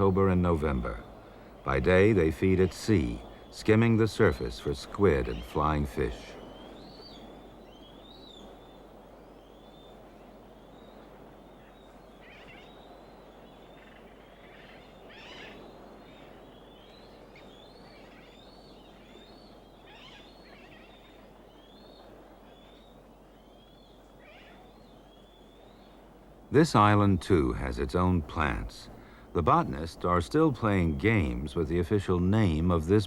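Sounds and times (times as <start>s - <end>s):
seabirds chirping: 0.0s - 33.0s
steady low hiss: 0.0s - 33.0s.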